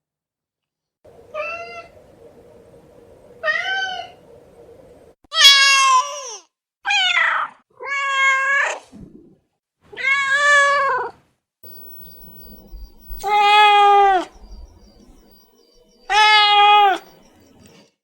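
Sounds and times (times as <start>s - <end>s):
cat meowing: 16.1s - 17.0s.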